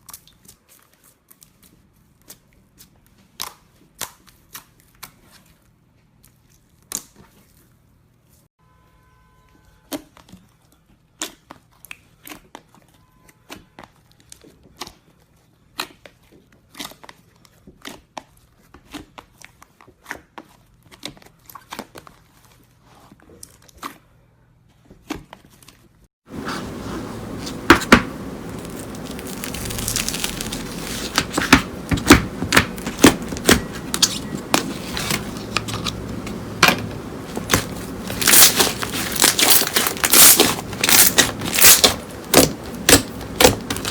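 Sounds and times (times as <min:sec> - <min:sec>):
slime crackling and popping: 0:27.6 - 0:35.2, 0:37.4 - 0:43.9.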